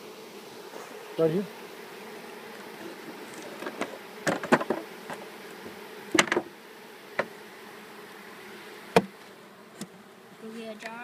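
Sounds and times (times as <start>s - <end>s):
bees humming: 0.0s - 11.0s
wooden hive parts knocking: 2.6s - 6.5s, 7.1s - 7.4s.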